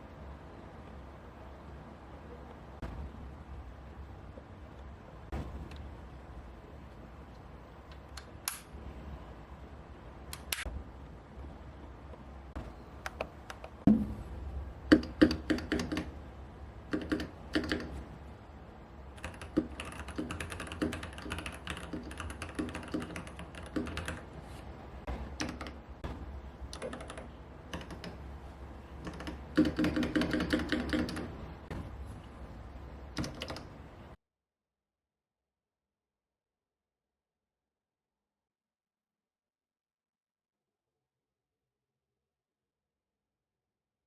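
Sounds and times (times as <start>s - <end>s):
typing on mechanical keyboard: 14.9s - 16.2s, 16.9s - 18.0s, 19.2s - 24.3s, 25.3s - 25.8s, 26.7s - 28.2s, 29.0s - 31.4s, 33.2s - 33.7s.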